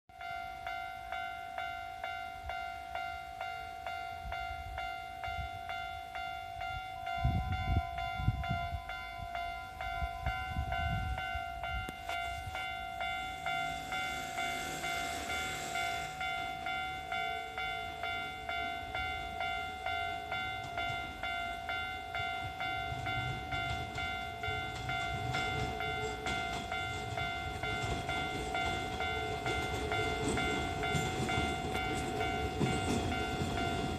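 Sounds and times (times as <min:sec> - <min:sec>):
level crossing alarm clanging: 0:00.1 - 0:33.9
train thumps: 0:22.4 - 0:33.9.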